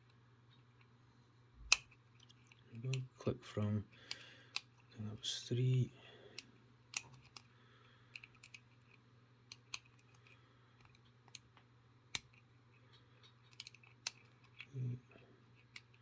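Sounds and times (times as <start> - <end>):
lock pick clicking in padlock: 8.2 - 8.6, 13.4 - 14.7.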